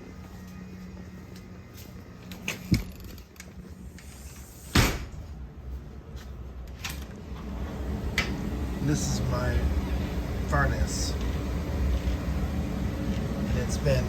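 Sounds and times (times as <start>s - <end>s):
door banging shut: 4.7s - 5.2s.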